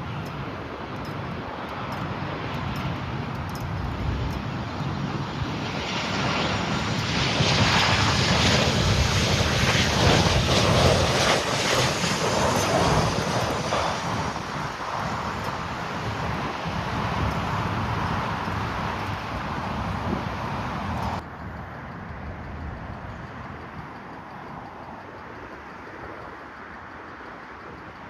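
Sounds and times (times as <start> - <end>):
jet airliner passing over: 0.0 - 21.2.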